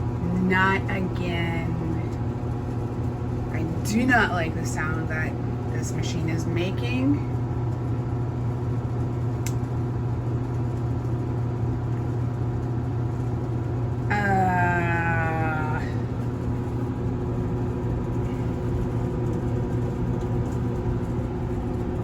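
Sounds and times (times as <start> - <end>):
washing machine humming: 0.0 - 22.0.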